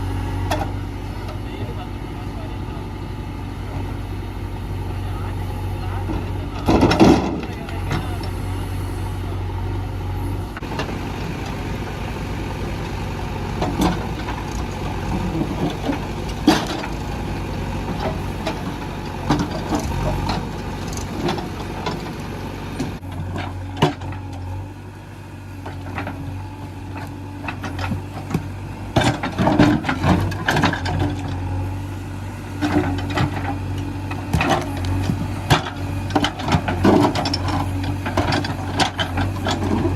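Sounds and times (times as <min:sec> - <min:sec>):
diesel engine running: 0:00.0 - 0:39.9
heavy rocks knocking and clattering: 0:12.6 - 0:24.3, 0:26.8 - 0:31.2, 0:32.8 - 0:39.9.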